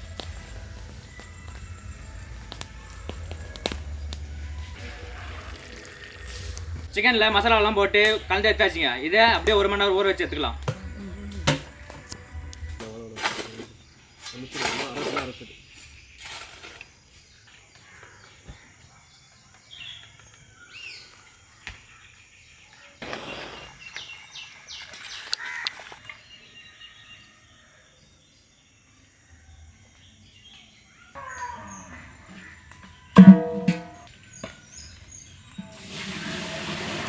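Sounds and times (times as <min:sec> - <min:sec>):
small birds chirping: 0:07.9 - 0:33.2.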